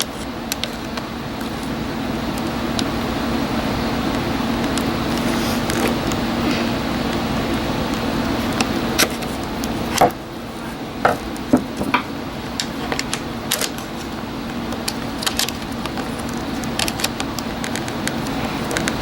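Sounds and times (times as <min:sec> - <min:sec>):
steady hum: 0:00.0 - 0:19.0.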